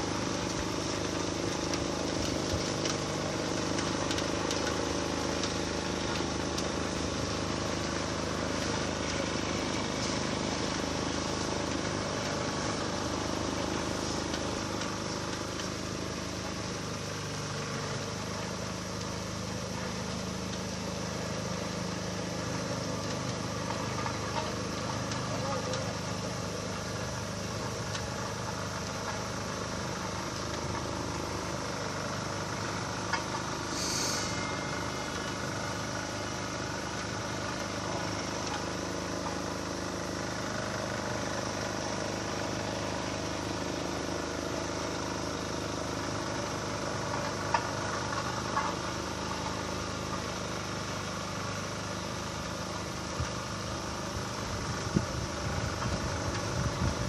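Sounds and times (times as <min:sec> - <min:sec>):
vehicle engine running: 0:00.0 - 0:57.0
brief hiss: 0:33.6 - 0:35.4.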